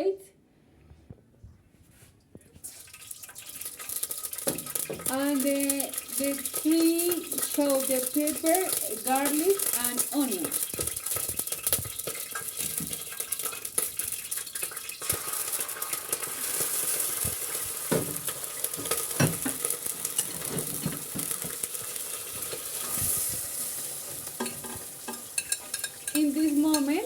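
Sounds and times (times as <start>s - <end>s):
vegetables sizzling in hot oil: 3.1s - 27.0s
utensil knocking and scraping pot: 4.0s - 14.4s, 16.1s - 27.0s.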